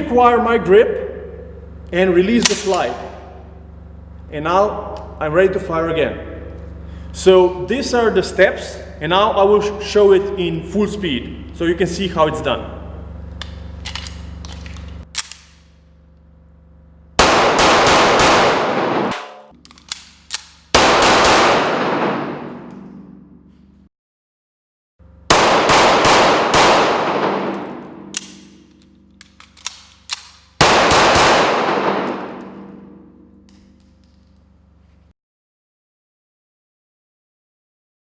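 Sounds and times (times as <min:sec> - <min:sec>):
metallic clicks: 0:02.4 - 0:03.0, 0:13.3 - 0:15.7, 0:19.6 - 0:20.8, 0:27.5 - 0:30.6
rapid gunfire: 0:17.2 - 0:19.5, 0:20.7 - 0:22.2, 0:25.3 - 0:27.5, 0:30.6 - 0:32.2.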